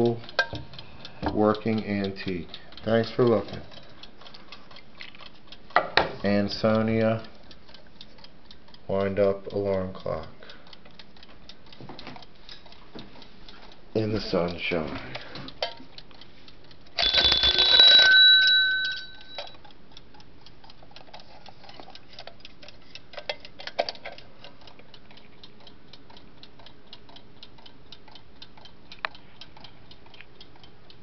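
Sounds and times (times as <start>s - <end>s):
clock ticking: 0.0s - 31.0s
alarm clock bell ringing: 17.0s - 19.6s.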